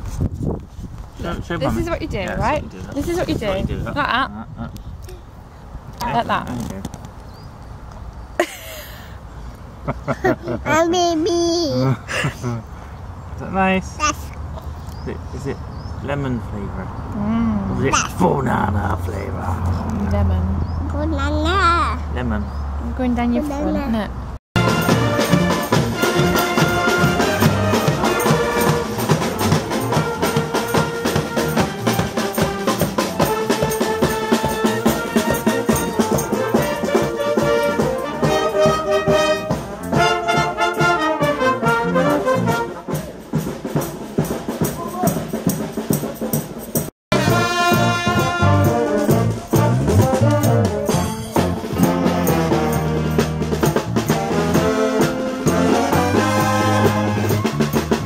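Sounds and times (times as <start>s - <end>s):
brass music with percussion: 1.5s - 4.2s, 24.6s - 58.0s.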